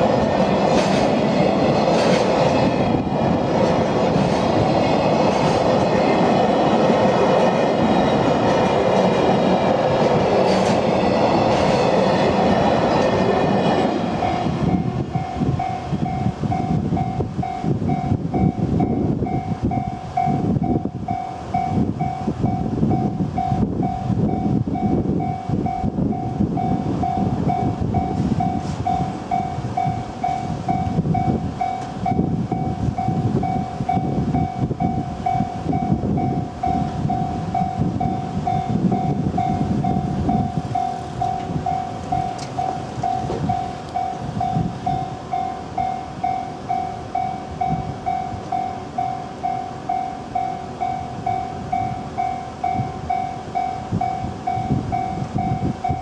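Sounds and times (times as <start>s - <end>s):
train rumbling: 0.0s - 56.0s
train wheels clacking on rails: 0.0s - 56.0s.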